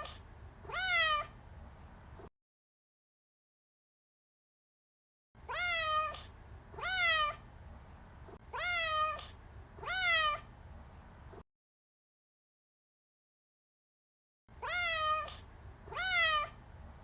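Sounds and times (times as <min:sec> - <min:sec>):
cat meowing: 0:00.0 - 0:01.4, 0:05.4 - 0:07.4, 0:08.5 - 0:10.5, 0:14.6 - 0:16.6.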